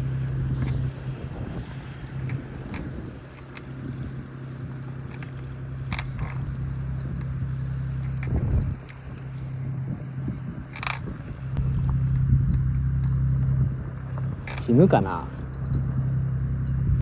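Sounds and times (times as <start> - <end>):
fishing reel clicking and rattling: 0.0 - 9.8, 10.6 - 12.3, 14.0 - 15.8
low hum: 0.0 - 17.0.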